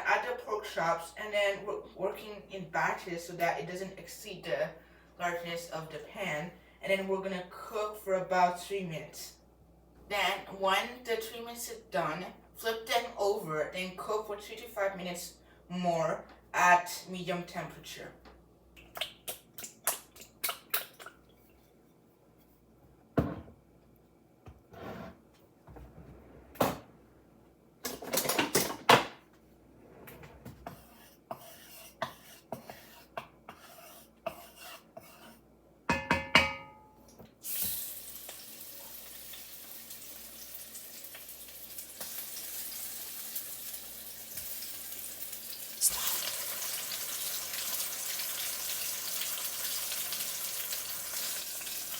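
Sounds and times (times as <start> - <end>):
pork chops sizzling in hot oil: 37.4 - 51.9.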